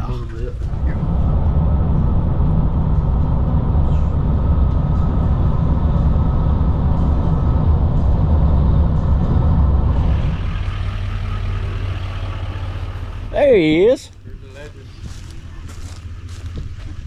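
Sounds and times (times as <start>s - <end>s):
vehicle road rumble inside cabin: 0.0s - 17.0s.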